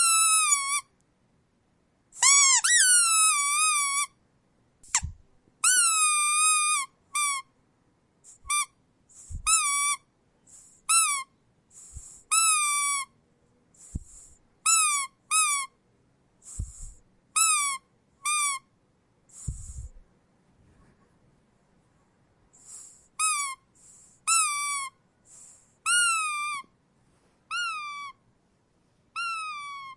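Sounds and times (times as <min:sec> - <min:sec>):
rubber squeak toy squeaking: 0:00.0 - 0:00.9, 0:02.2 - 0:04.2, 0:04.8 - 0:07.5, 0:08.3 - 0:10.1, 0:10.8 - 0:13.2, 0:13.9 - 0:15.8, 0:16.6 - 0:18.7, 0:23.2 - 0:23.7, 0:24.3 - 0:25.0, 0:25.8 - 0:26.7, 0:27.5 - 0:28.2, 0:29.2 - 0:29.9
short hisses: 0:11.7 - 0:12.3, 0:13.8 - 0:14.4, 0:16.4 - 0:17.0, 0:19.3 - 0:20.0.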